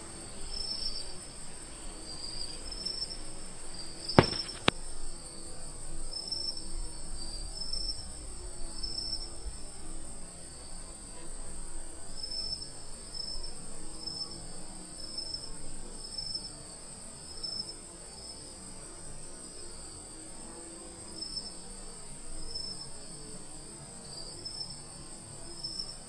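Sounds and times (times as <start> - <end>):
insects droning: 0.0 - 4.7
insect chirps: 4.2 - 4.7.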